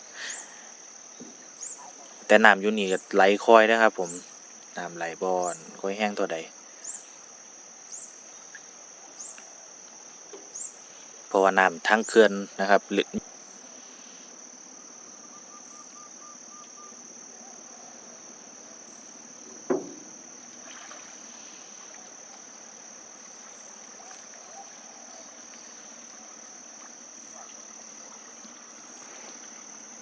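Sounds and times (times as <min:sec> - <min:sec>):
high-pitched insect chorus: 0:00.0 - 0:30.0
sharp knock: 0:19.7 - 0:20.1.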